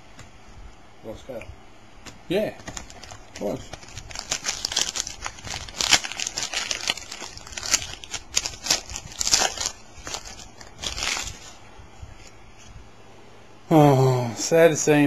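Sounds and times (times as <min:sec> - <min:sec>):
card wrappers crackling: 0:02.5 - 0:11.6.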